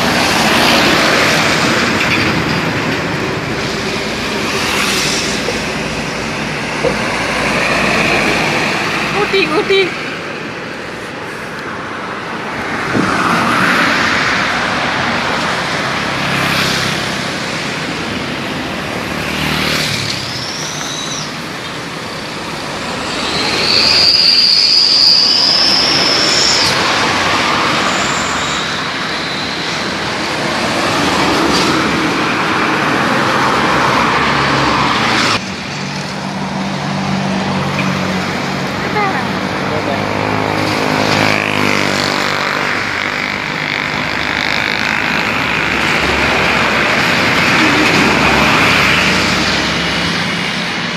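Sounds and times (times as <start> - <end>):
road traffic passing: 0.0 - 50.9
high thin squeal: 22.5 - 26.9, 27.7 - 29.8.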